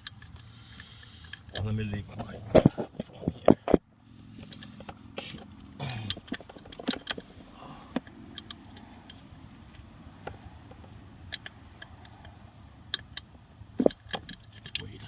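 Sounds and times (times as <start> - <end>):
clicks and taps of plastic parts: 4.4 - 15.0.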